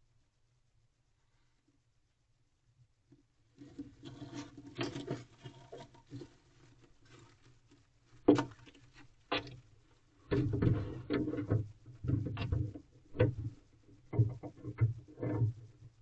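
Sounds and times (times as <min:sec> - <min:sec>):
owl feet scratching wooden box: 0:03.6 - 0:09.7, 0:10.3 - 0:15.8.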